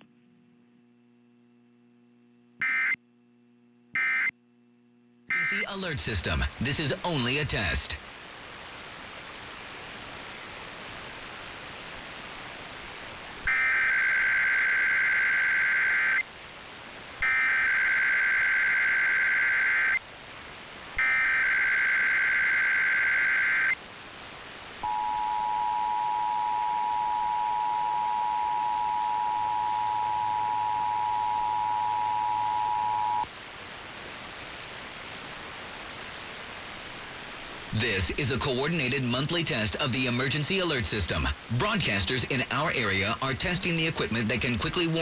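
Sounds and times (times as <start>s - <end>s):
broadcast hiss: 0.0s - 45.0s
warbling digital data bursts: 21.0s - 23.8s
two-tone attention signal: 24.8s - 33.2s.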